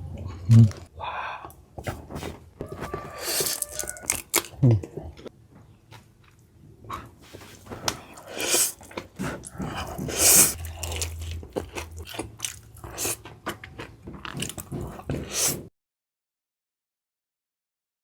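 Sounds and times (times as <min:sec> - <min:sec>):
person chewing food: 0:00.5 - 0:05.3, 0:05.9 - 0:15.7
crunching bites: 0:02.6 - 0:04.6.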